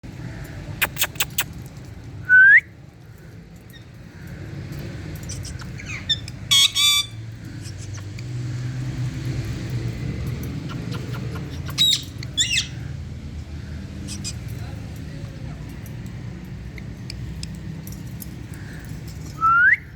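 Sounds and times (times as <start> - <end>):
parakeet calling: 5.2 - 8.1, 10.6 - 13.0, 14.0 - 14.4.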